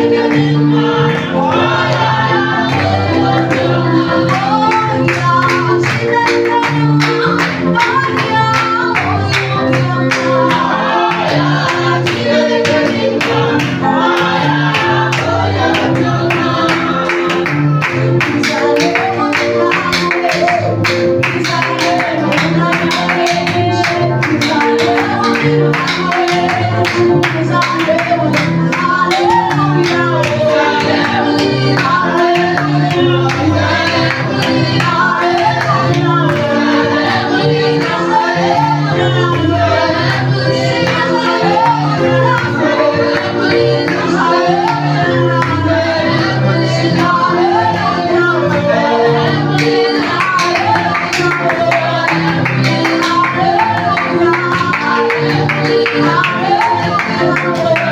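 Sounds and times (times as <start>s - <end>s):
worship band music with singing: 0.0s - 57.9s.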